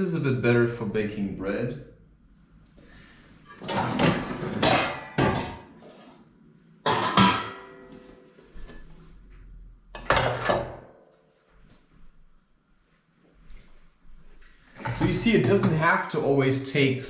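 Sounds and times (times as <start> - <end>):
pans and utensils clattering: 3.5 - 6.2, 6.8 - 9.0, 10.0 - 11.0, 14.7 - 15.9.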